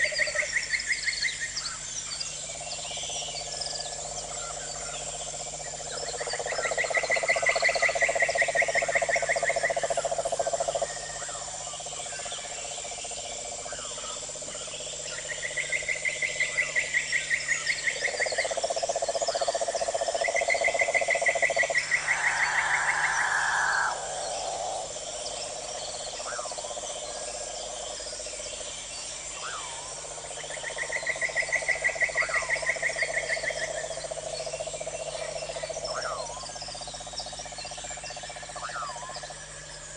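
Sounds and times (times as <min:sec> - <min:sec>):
frogs trilling: 0:00.0 - 0:39.9
high insect drone: 0:00.0 - 0:39.9.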